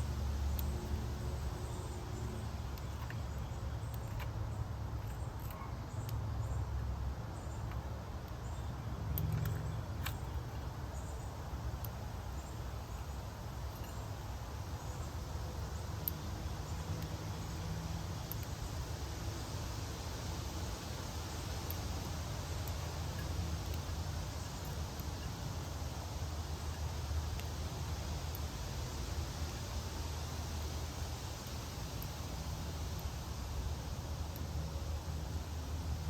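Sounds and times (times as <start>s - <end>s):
faint clicks: 0.5s - 0.7s, 9.1s - 10.4s, 18.2s - 18.6s.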